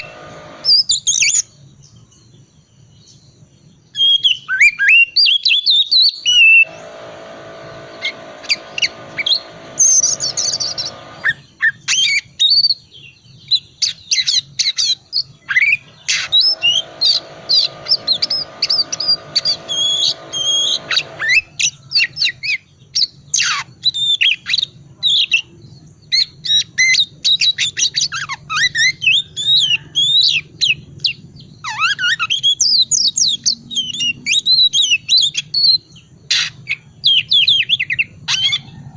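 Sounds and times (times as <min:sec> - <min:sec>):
long even buzz: 0:00.0 - 0:01.1, 0:06.3 - 0:11.4, 0:15.9 - 0:21.6.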